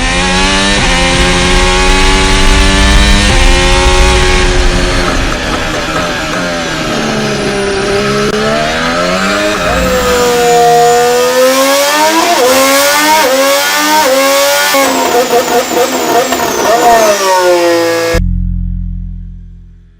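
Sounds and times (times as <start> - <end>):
racing engine at high revs: 0.0 - 18.2
low steady hum: 18.2 - 19.9.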